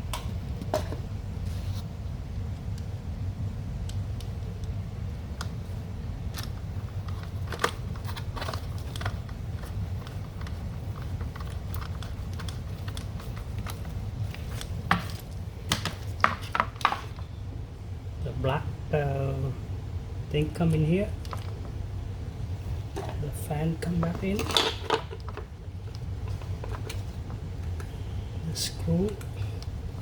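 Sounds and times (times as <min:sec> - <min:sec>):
steady low hum: 0:00.0 - 0:30.0
small parts clicking and tapping: 0:06.2 - 0:17.2.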